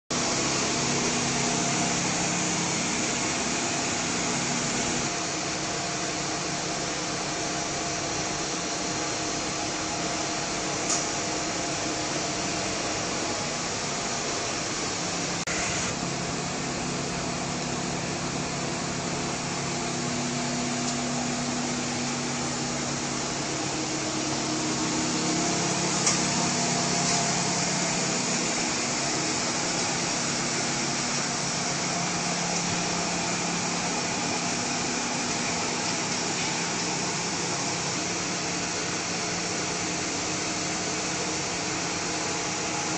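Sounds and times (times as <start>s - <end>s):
whooshing blower noise: 0.1s - 42.9s.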